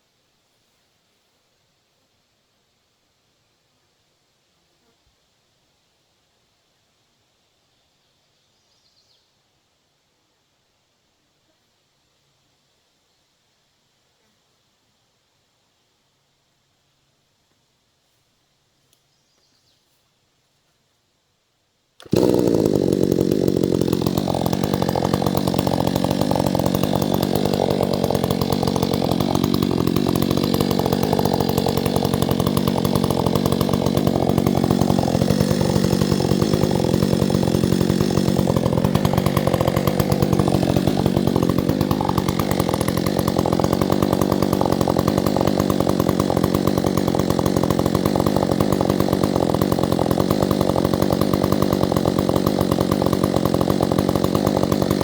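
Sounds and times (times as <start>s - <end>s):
chainsaw engine running: 22.0s - 55.0s.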